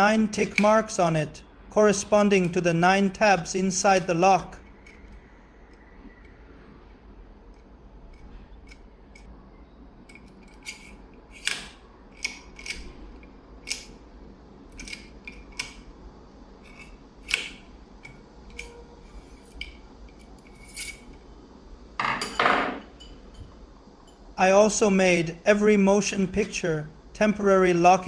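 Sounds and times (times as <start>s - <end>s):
metal clicks of lock tool: 10.1s - 14.0s.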